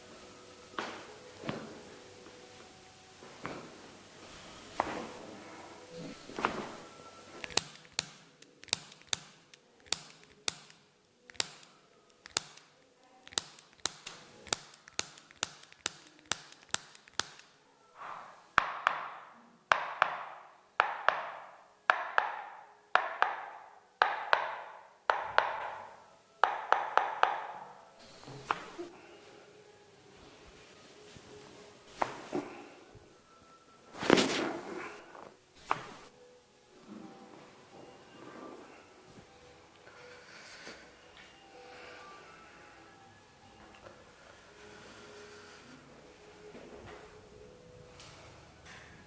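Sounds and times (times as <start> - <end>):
quick irregular clicks: 7.4 - 17.5.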